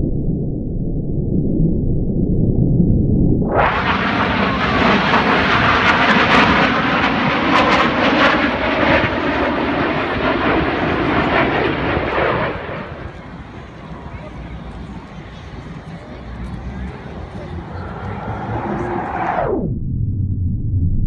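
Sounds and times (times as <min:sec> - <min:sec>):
airplane engine flying by: 0:03.5 - 0:19.7.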